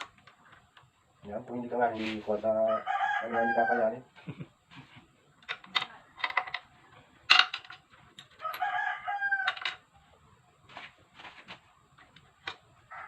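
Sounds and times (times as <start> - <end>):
rooster crowing: 2.6 - 4.0, 8.4 - 9.8.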